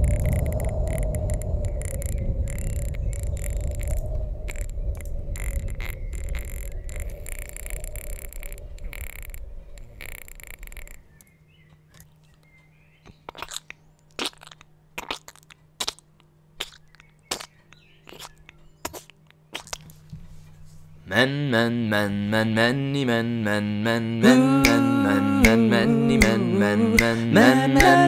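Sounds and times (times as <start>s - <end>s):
sharp mouth clicks: 0.0s - 11.0s, 13.0s - 20.0s, 24.6s - 26.4s, 27.0s - 28.0s
mouth-made rumble with crackles: 0.0s - 20.7s.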